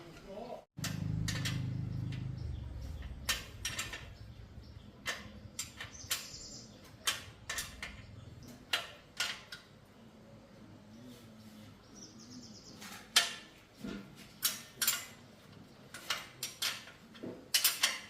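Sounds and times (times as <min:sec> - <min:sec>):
metallic clicks and taps of tools: 0:05.0 - 0:09.7, 0:15.9 - 0:18.0.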